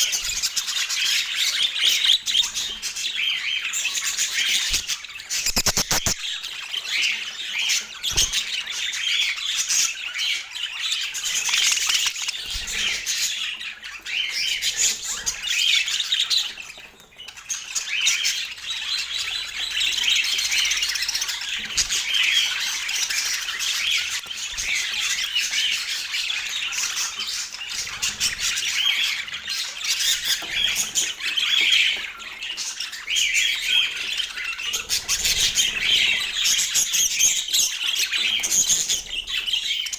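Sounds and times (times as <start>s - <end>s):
budgerigar chattering and warbling: 4.6s - 6.4s.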